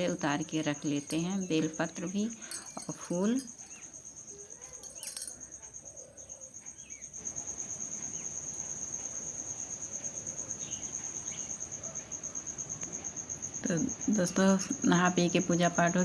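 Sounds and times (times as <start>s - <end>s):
crickets trilling: 0.0s - 16.0s.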